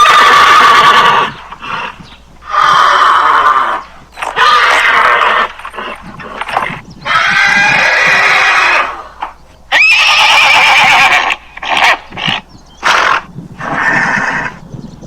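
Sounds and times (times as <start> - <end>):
horse whinnying: 0.0 - 14.6.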